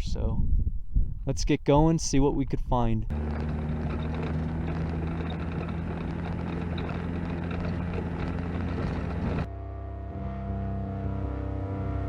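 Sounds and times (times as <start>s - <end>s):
rough road noise: 3.0s - 9.5s
vehicle engine running: 3.1s - 12.0s.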